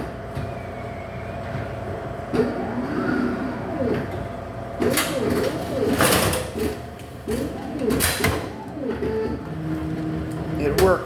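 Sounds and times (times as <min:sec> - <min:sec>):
whirs rising and falling in pitch: 0:00.0 - 0:06.1, 0:07.3 - 0:10.5
vending machine motor whine: 0:00.0 - 0:11.0
mechanism clunks: 0:04.8 - 0:09.5.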